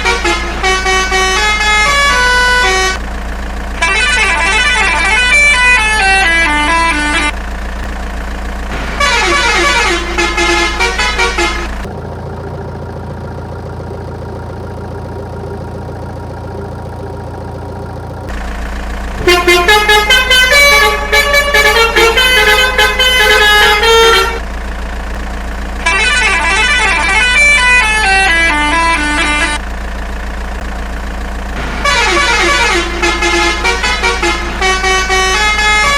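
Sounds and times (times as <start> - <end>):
steady low drone: 2.7 - 24.4.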